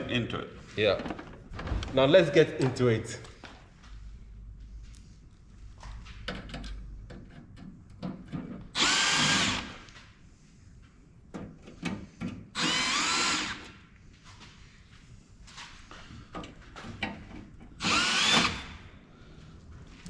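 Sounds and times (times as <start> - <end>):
power drill motor whine: 8.8 - 9.8, 12.6 - 13.7, 17.8 - 18.8.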